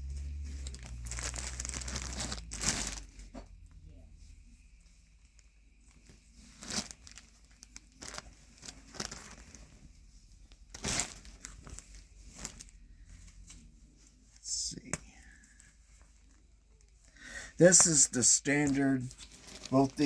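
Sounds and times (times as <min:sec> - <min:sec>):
plastic packaging crinkling: 0:00.3 - 0:03.3, 0:05.3 - 0:12.8, 0:17.6 - 0:20.0.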